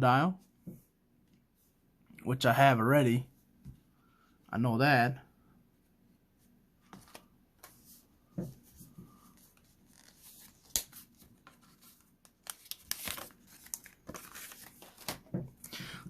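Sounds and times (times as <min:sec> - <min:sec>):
card wrapper tearing: 0:12.3 - 0:15.2.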